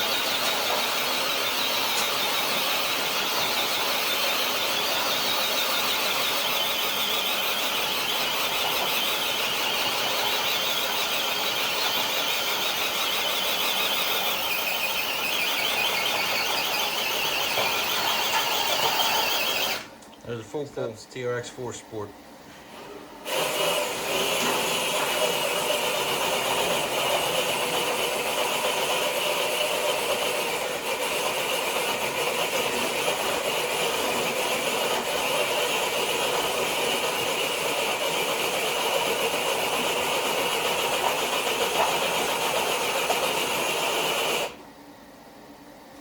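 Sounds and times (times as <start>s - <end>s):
electric motor whining: 0.0s - 19.9s.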